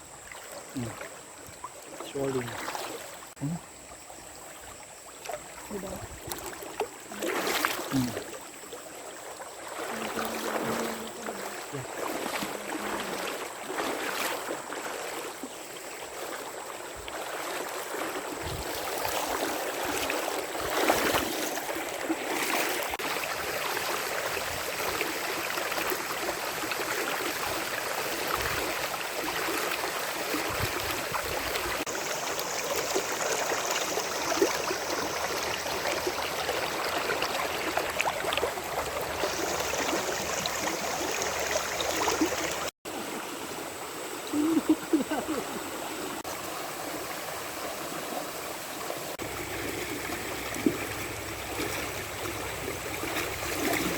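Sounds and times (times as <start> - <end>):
steady rain hiss: 43.0 - 48.0.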